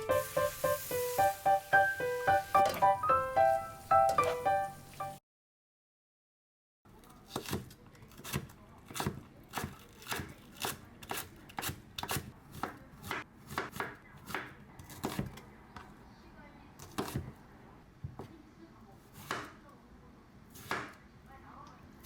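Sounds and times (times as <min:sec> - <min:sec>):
knife chopping on cutting board: 0:07.3 - 0:15.4, 0:16.8 - 0:17.3, 0:20.5 - 0:21.0.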